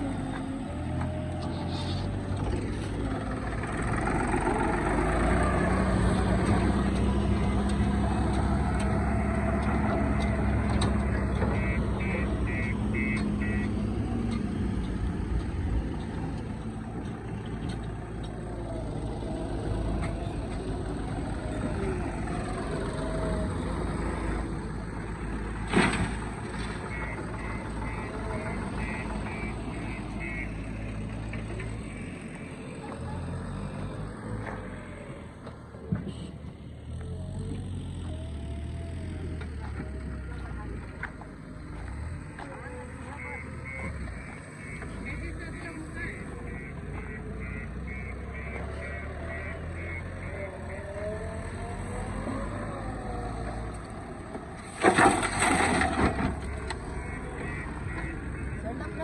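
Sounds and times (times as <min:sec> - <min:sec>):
backhoe diesel engine revving: 0:00.0 - 0:59.0
reversing alarm beeps: 0:11.6 - 0:13.8.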